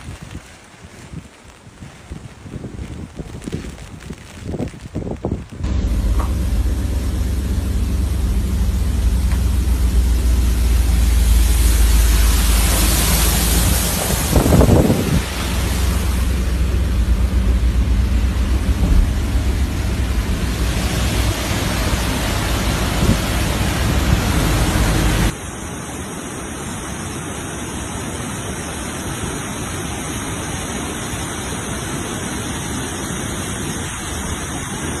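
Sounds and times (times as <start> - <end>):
wind rumbling on microphone: 0.0 - 25.4
rain: 0.0 - 35.0.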